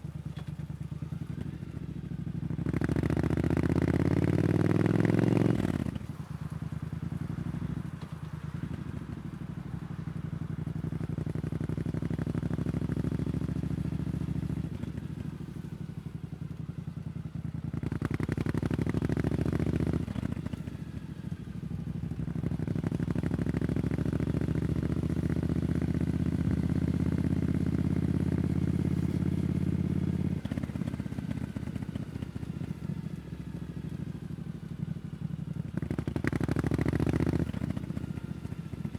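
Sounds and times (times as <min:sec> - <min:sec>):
motorcycle engine revving: 0:02.6 - 0:06.0, 0:35.8 - 0:38.9.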